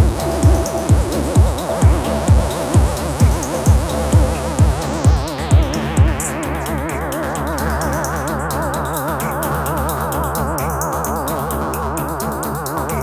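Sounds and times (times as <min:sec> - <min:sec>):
warbling synthesizer tones: 0:00.0 - 0:07.7
bass drone: 0:00.0 - 0:13.0
hi-hat ticks: 0:00.0 - 0:13.0.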